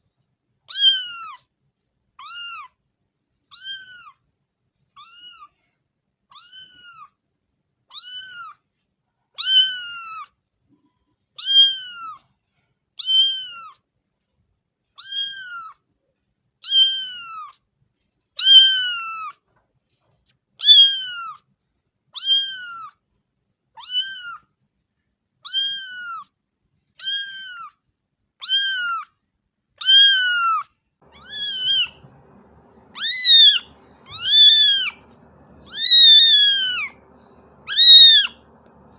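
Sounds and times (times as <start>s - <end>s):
faint low background noise: 0.0s - 13.0s, 29.1s - 38.9s
cat meowing: 0.7s - 1.4s, 2.2s - 2.7s, 3.5s - 4.2s, 5.0s - 5.5s, 6.3s - 7.1s, 7.9s - 8.6s, 9.4s - 10.3s, 11.4s - 12.2s, 13.0s - 13.8s, 15.0s - 15.8s, 16.6s - 17.6s, 18.4s - 19.4s, 20.6s - 21.4s, 22.2s - 22.9s, 23.8s - 24.4s, 25.4s - 26.3s, 27.0s - 27.8s, 28.4s - 29.1s, 29.8s - 38.9s.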